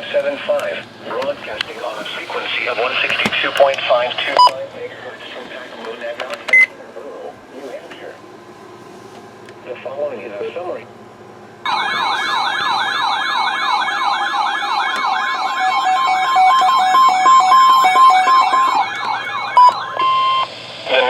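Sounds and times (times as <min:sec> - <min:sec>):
warbling electronic siren tone: 0:11.7 - 0:20.6.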